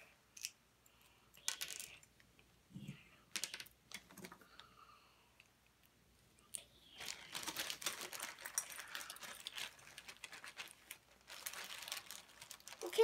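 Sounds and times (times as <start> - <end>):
plastic pieces rattling and clicking: 1.4 - 2.1, 3.3 - 4.4, 7.4 - 13.0.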